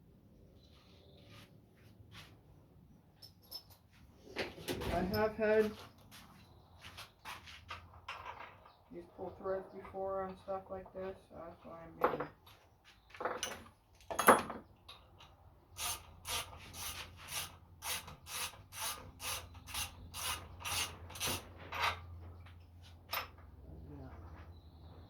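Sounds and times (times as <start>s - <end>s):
hand tool scraping metal: 15.8s - 22.0s.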